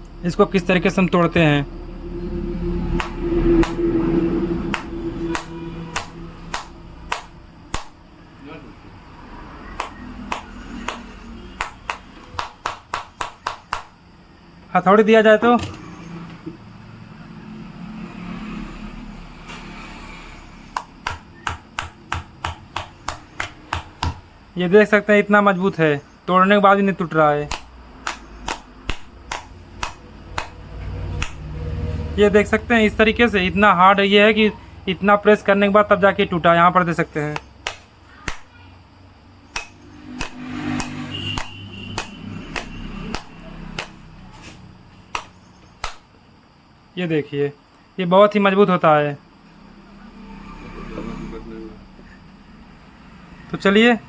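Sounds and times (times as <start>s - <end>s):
hammer knocking on glass: 20.8s - 24.2s.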